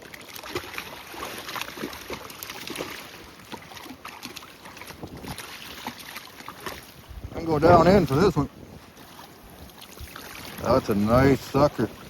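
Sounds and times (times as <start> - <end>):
river water splashing: 0.0 - 12.0
wind on microphone: 4.9 - 6.0, 6.9 - 12.0.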